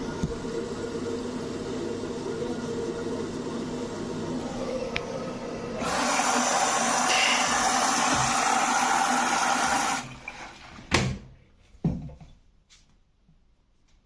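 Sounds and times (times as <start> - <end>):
water rushing into washing machine: 0.0 - 11.2.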